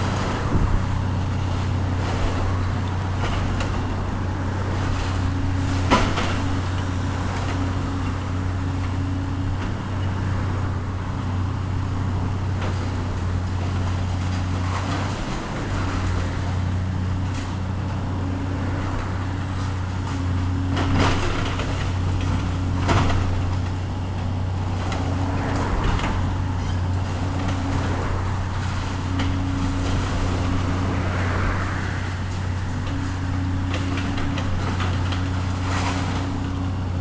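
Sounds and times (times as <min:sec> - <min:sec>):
heavy machine engine running: 0:00.0 - 0:37.0
demolition knocks and crunches: 0:04.8 - 0:08.4, 0:19.6 - 0:27.9, 0:32.3 - 0:37.0.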